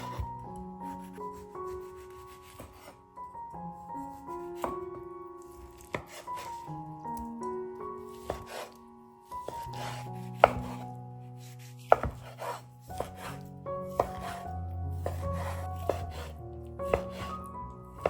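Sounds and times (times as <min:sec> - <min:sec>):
soft background music: 0:00.0 - 0:18.0
knife slicing and scraping: 0:05.4 - 0:06.7, 0:08.1 - 0:08.8, 0:09.4 - 0:17.5
knife knocking on cutting board: 0:10.4 - 0:10.8, 0:11.9 - 0:12.3.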